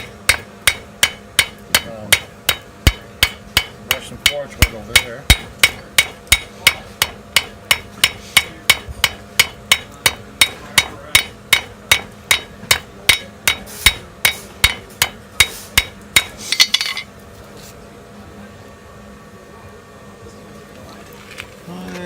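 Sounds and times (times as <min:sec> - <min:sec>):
hammer ringing on anvil: 0:00.0 - 0:17.1.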